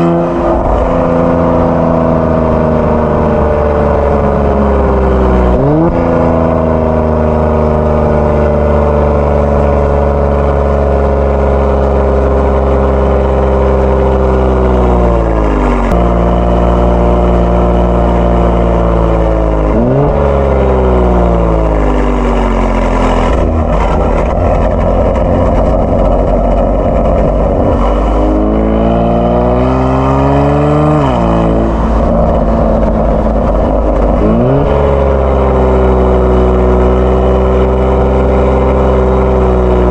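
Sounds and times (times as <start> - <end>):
car engine revving while driving: 0.0 - 39.9.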